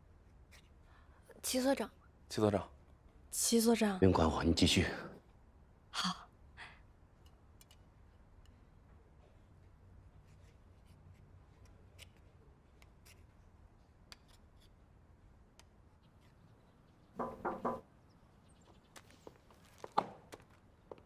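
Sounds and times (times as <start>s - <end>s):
knocking on door: 17.2s - 17.9s.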